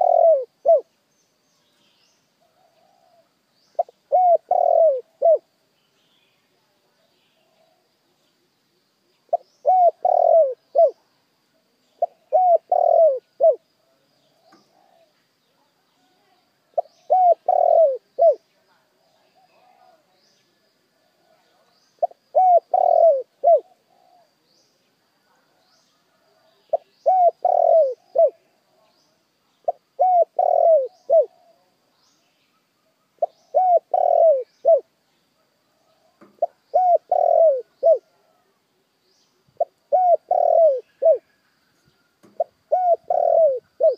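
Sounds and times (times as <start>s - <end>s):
dove cooing: 0.0s - 0.9s, 2.4s - 5.5s, 9.3s - 11.0s, 12.0s - 13.6s, 14.3s - 15.2s, 16.8s - 18.4s, 22.0s - 24.4s, 26.1s - 28.6s, 29.7s - 31.7s, 33.2s - 34.9s, 35.8s - 38.5s, 39.6s - 41.3s, 42.2s - 43.9s.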